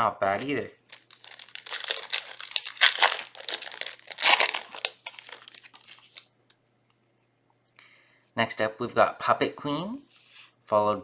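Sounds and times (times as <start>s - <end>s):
foil wrapper crinkling and tearing: 0.0s - 6.2s.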